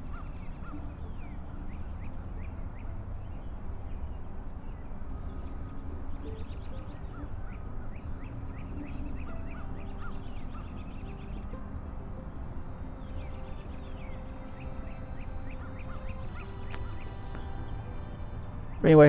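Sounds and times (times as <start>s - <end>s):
birds chirping: 0.0s - 19.0s
rapid high bird trill: 5.2s - 19.0s.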